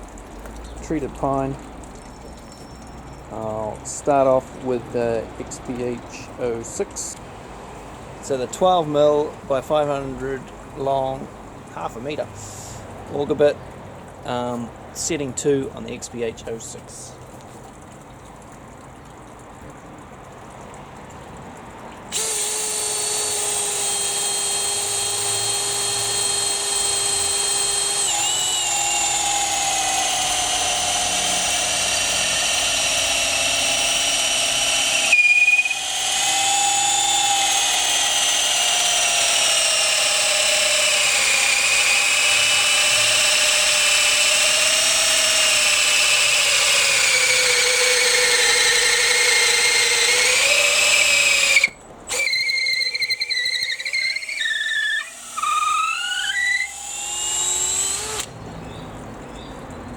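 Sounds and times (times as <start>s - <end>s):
cordless drill motor whine: 2.0s - 3.4s, 22.1s - 58.3s.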